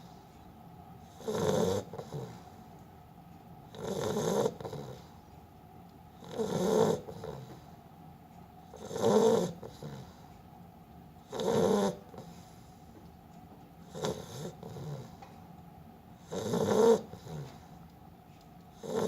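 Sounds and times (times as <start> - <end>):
dog snoring: 1.0 - 2.6, 3.7 - 5.2, 6.1 - 7.8, 8.6 - 10.3, 11.2 - 12.7, 13.8 - 15.3, 16.1 - 17.8, 18.7 - 19.0.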